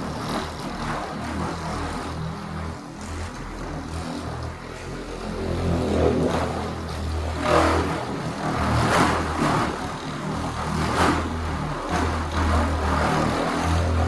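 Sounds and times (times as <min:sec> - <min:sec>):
electric polisher humming: 0:01.7 - 0:08.7.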